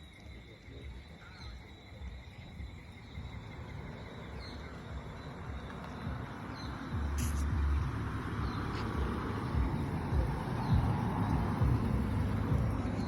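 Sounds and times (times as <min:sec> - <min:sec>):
insects trilling: 0:00.0 - 0:13.0
low rumble: 0:03.3 - 0:13.0
hiss: 0:07.1 - 0:07.7.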